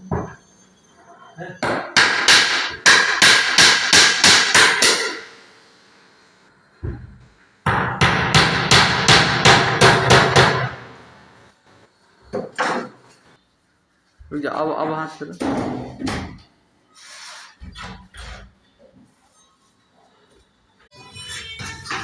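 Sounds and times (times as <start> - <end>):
hammer striking wood: 1.6 - 5.2, 7.7 - 11.0.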